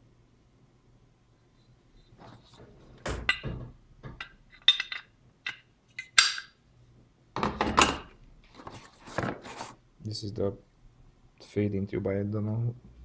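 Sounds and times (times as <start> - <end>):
metal parts clinking: 4.2 - 6.6.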